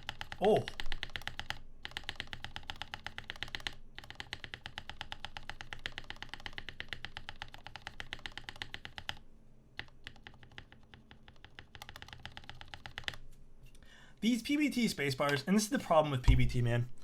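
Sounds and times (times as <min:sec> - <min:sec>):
mechanical keyboard typing: 0:00.0 - 0:09.2, 0:09.8 - 0:13.2.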